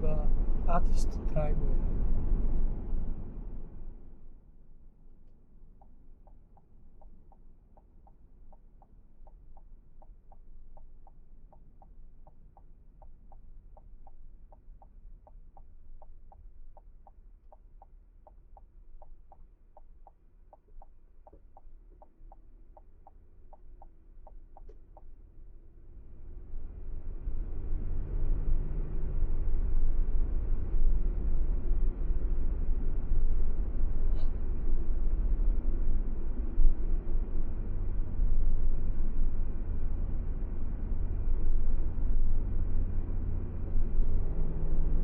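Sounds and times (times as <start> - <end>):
low car hum: 0.0 - 45.0
turn signal ticking: 5.7 - 25.2.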